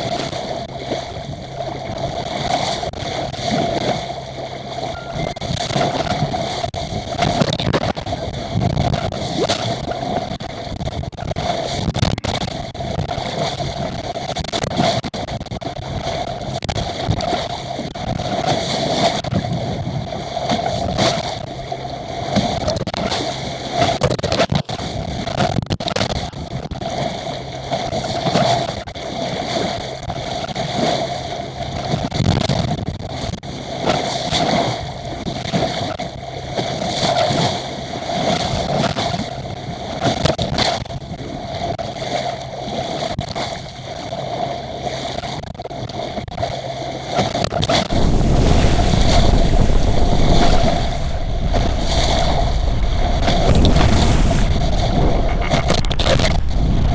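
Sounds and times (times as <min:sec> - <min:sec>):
steady mid-pitched hum: 0:00.0 - 0:14.2, 0:43.5 - 0:56.9
water rushing along hull: 0:00.0 - 0:56.9
wind buffeting on microphone: 0:47.2 - 0:56.9.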